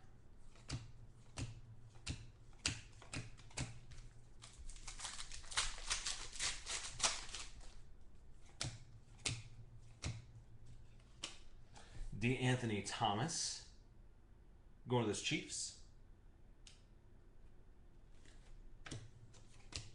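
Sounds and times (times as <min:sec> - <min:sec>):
trading cards tapping and clicking: 0:00.5 - 0:07.6, 0:08.5 - 0:11.5, 0:18.8 - 0:19.9.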